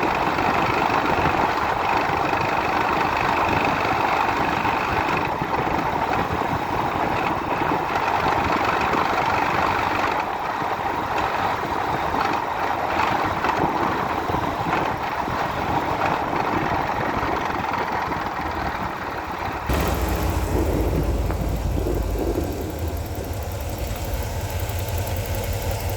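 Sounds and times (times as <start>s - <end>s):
van engine rattling: 19.4s - 25.9s.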